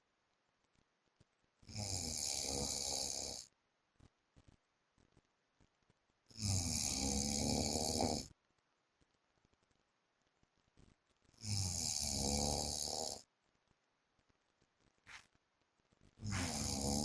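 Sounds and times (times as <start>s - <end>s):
man snoring: 1.7s - 3.5s, 6.3s - 8.3s, 11.4s - 13.2s, 16.2s - 17.0s.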